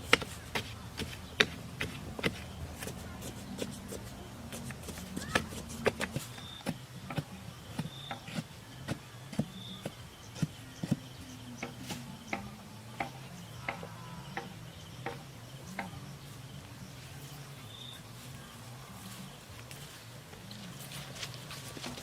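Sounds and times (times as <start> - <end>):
faint insect chirp: 7.3 - 21.2.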